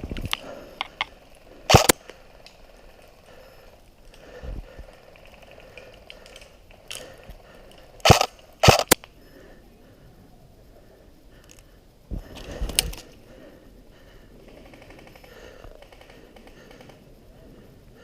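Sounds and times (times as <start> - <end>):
airsoft rifle shots: 1.7 - 2.0, 8.0 - 9.0.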